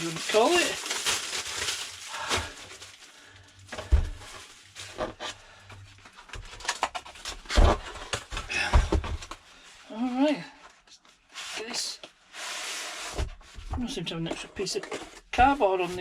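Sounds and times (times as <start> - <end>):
cellophane crinkling: 0.0 - 7.4.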